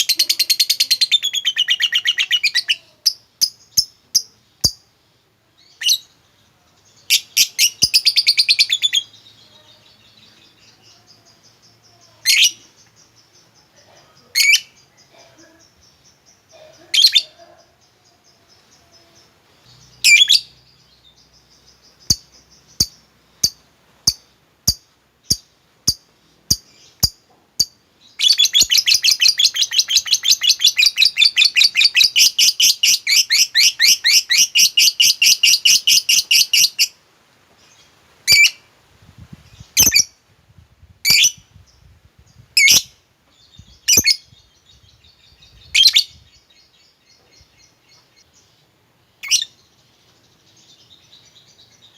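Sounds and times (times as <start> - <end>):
lovebird chirping and trilling: 0.0 - 4.9, 5.6 - 6.2, 6.9 - 37.0, 38.3 - 38.6, 39.4 - 40.2, 41.0 - 48.0, 49.2 - 49.7.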